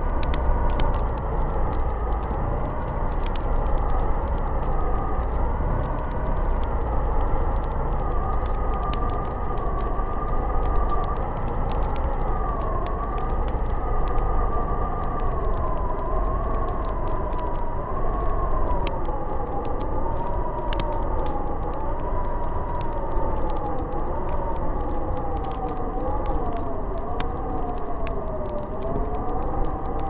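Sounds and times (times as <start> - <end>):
deep low rumble: 0.0 - 21.4
faint clicks and crackles: 0.0 - 30.0
wind howling: 0.0 - 30.0.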